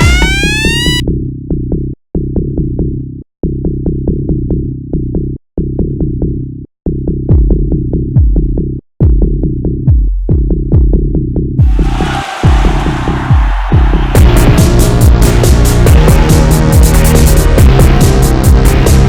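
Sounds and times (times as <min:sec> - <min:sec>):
electronic dance music: 0:00.0 - 0:01.0.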